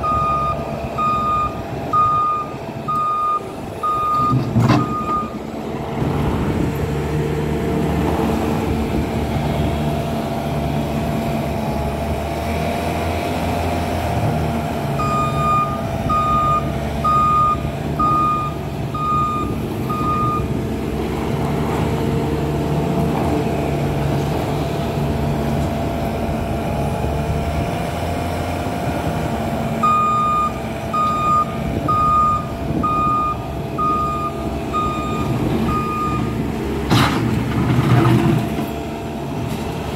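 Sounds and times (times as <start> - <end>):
reversing alarm beeping: 0.0 - 5.4, 15.0 - 20.5, 29.8 - 36.4
diesel engine running: 0.0 - 39.9.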